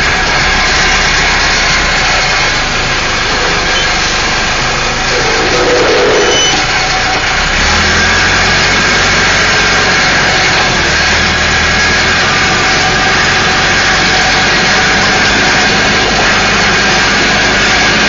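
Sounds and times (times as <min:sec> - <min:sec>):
high whine: 0:00.0 - 0:07.6
diesel engine running: 0:00.0 - 0:18.0.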